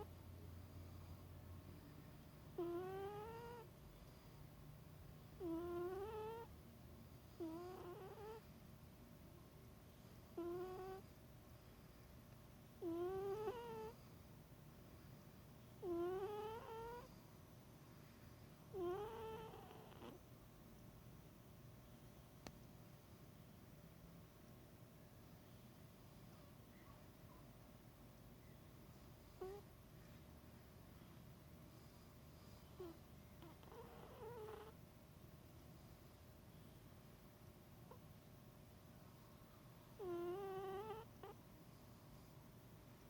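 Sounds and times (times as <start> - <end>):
cat snoring: 2.5 - 4.4, 5.4 - 6.5, 7.3 - 8.5, 10.3 - 11.1, 12.8 - 14.1, 15.8 - 17.2, 18.7 - 20.2, 29.2 - 29.7, 31.7 - 34.8, 40.0 - 41.4.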